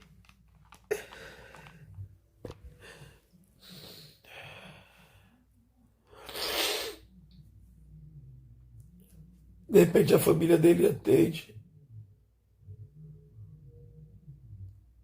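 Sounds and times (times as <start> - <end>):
man breathing and sighing: 0.9 - 5.4.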